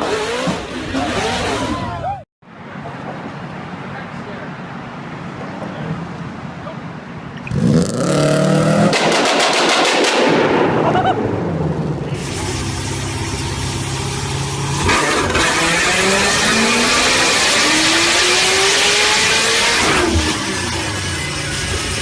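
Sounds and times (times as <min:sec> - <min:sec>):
loud engine revving: 0:07.5 - 0:10.8, 0:12.1 - 0:22.0
exhaust pops and crackles: 0:08.8 - 0:10.4.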